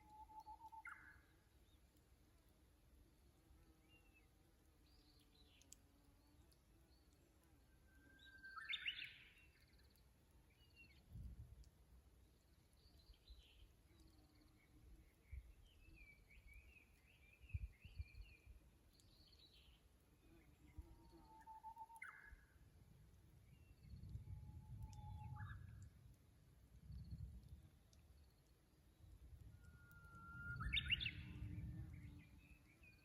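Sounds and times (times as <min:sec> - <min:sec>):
small birds chirping: 0:08.2 - 0:21.2, 0:26.8 - 0:33.0
low rumble of wind: 0:10.8 - 0:13.6, 0:17.4 - 0:18.7, 0:22.6 - 0:33.0
bush warbler singing: 0:30.4 - 0:33.0.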